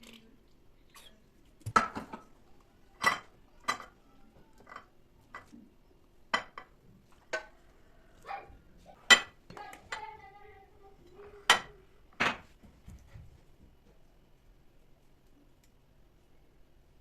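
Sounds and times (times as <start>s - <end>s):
dishes and cutlery clinking: 1.7s - 2.3s, 3.0s - 4.0s, 4.6s - 5.5s, 6.3s - 7.6s, 9.0s - 10.2s, 11.0s - 12.5s.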